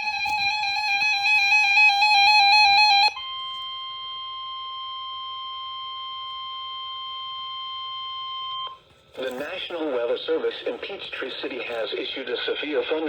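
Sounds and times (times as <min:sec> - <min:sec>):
steady single-pitch alarm tone: 0:00.0 - 0:08.8.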